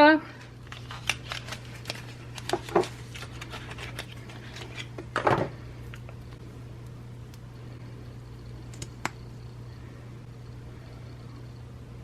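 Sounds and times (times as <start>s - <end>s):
steady low hum: 0.0s - 12.0s
packaging rustling: 0.4s - 5.2s.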